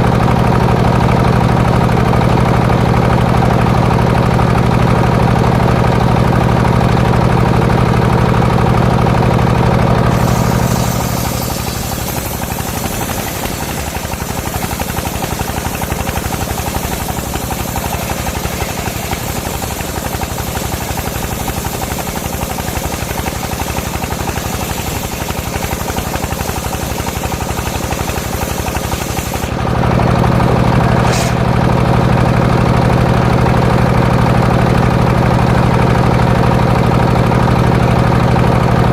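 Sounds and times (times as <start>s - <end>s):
sawmill engine running: 0.0s - 38.9s
saw blade cutting hiss: 10.1s - 29.8s, 30.4s - 32.0s
spinning blade whistle: 10.1s - 29.8s, 30.4s - 32.0s.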